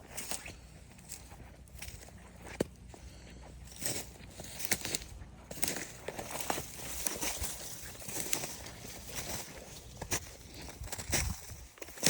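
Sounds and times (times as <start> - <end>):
faint footsteps: 0.0 - 12.0.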